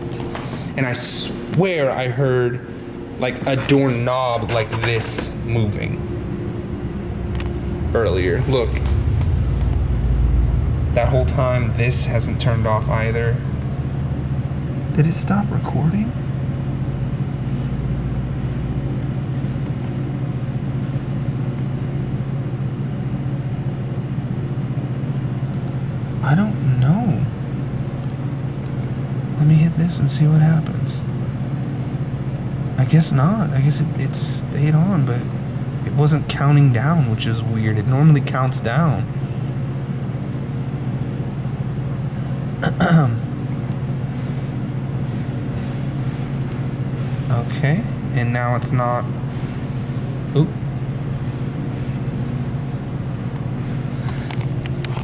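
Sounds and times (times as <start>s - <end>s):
low hum: 0.0s - 26.2s
low mechanical hum: 0.0s - 55.0s.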